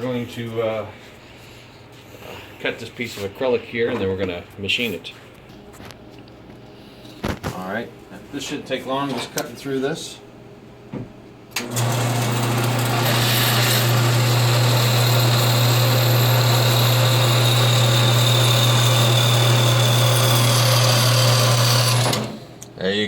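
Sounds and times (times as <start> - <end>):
electric power saw cutting: 11.6 - 22.5.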